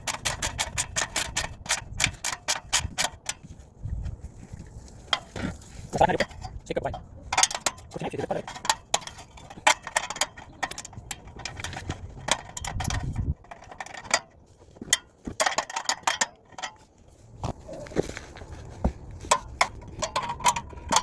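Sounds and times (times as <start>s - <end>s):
metallic clicks of hand tool: 0.0s - 3.4s.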